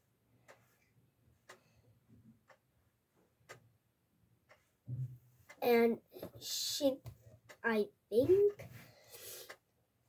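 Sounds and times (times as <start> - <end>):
faint ticks: 0.0 - 1.7.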